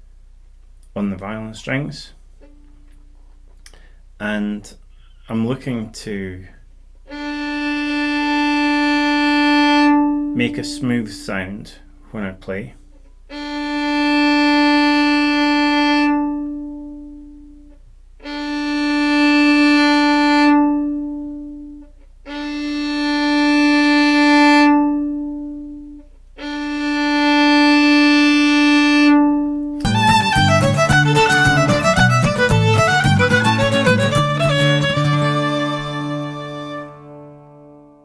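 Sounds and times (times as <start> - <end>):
fast fiddle tune: 7.1 - 10.8, 22.3 - 24.8, 26.4 - 28.7, 29.8 - 37.3
violin long bowed notes: 7.1 - 11.3, 13.3 - 37.7.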